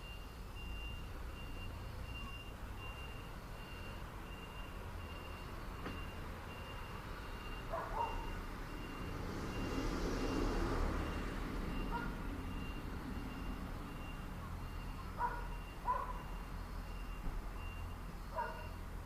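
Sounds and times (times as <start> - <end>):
reversing alarm beeping: 0.0 - 18.9
vehicle passing: 6.9 - 16.8.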